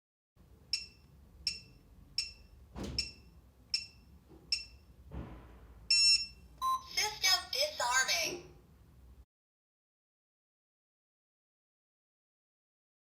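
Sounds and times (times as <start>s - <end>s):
alarm keypad beeps: 0.7s - 4.9s, 5.9s - 7.2s
soft thumps: 4.3s - 5.7s.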